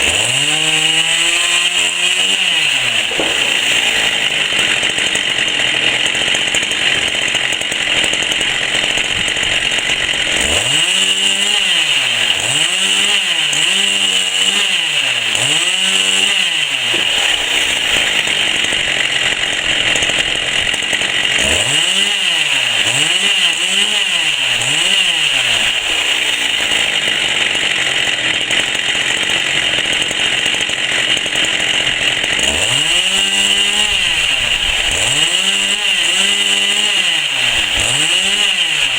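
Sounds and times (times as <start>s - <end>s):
chainsaw running hard: 0.0s - 38.9s.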